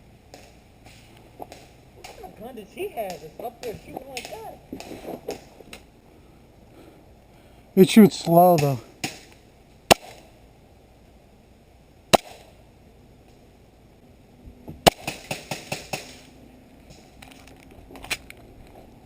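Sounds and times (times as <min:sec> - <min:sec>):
airsoft pistol shots: 0:09.9 - 0:10.2, 0:12.1 - 0:12.6, 0:14.8 - 0:16.2.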